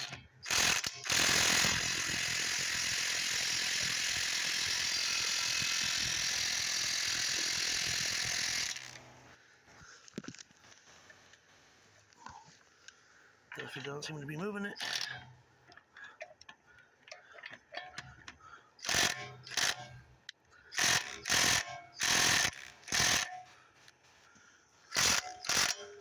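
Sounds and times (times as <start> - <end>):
impact driver hammering: 18.8 - 19.9, 20.8 - 23.4, 25.0 - 26.0.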